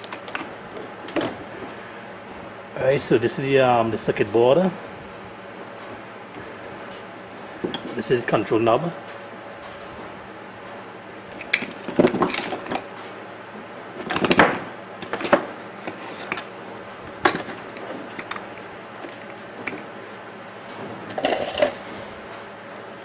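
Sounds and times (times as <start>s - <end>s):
coffee maker parts knocking: 17.2s - 19.9s.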